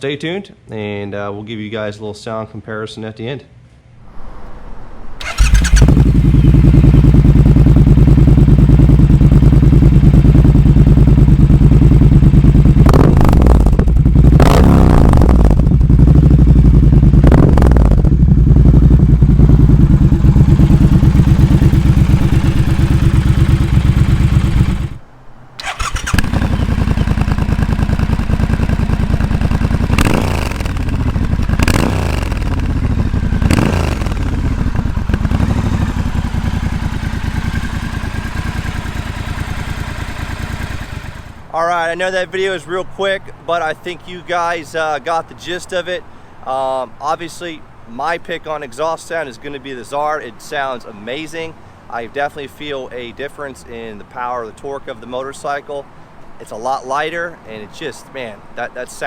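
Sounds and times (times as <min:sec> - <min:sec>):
motorcycle engine revving: 0:05.2 - 0:25.0, 0:25.6 - 0:41.5.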